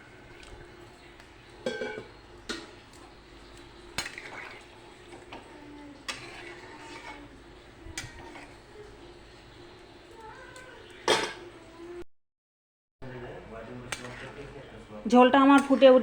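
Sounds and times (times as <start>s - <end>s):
spoon stirring in a pot: 0.3s - 11.5s, 13.6s - 16.0s
spoon clinking against pot: 1.6s - 2.8s.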